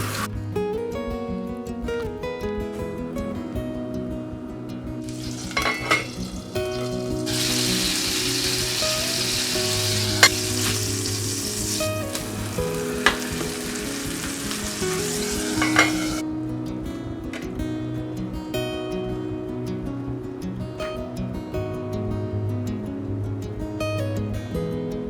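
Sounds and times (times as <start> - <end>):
food sizzling in a frying pan: 0.0 - 0.3, 5.1 - 16.2
acoustic guitar music: 0.0 - 25.0.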